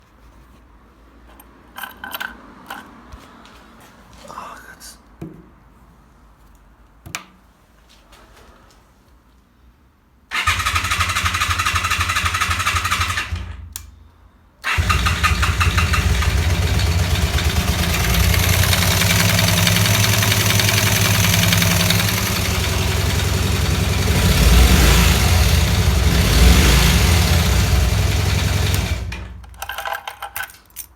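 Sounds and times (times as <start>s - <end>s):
motorcycle engine starting and running: 10.3s - 13.7s, 14.7s - 29.5s.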